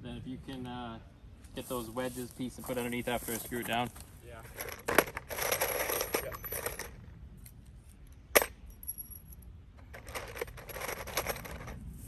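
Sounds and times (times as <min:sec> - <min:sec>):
metal tools clinking: 0:04.5 - 0:07.6.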